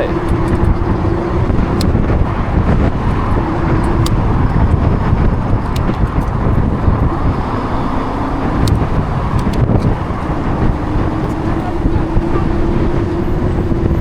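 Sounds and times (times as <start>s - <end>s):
cars passing: 0.0s - 14.0s
wind rumble on microphone: 0.0s - 14.0s
light clicks: 8.6s - 9.9s.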